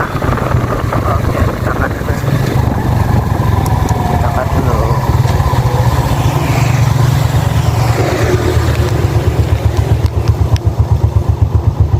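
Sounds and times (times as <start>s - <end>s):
motorcycle engine slowing to idle: 1.7s - 11.9s.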